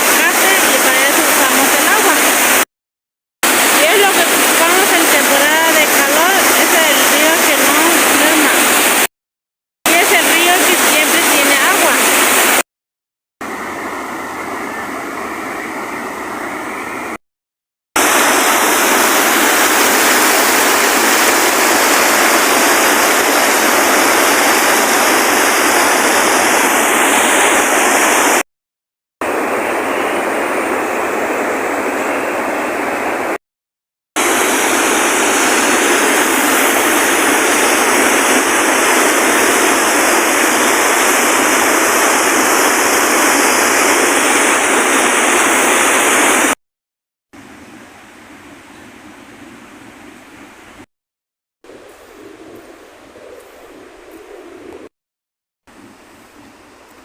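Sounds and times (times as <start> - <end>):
rushing water: 0.0 - 2.7, 3.4 - 9.1, 9.9 - 12.7, 13.4 - 17.2, 18.0 - 28.5, 29.2 - 33.4, 34.2 - 46.6.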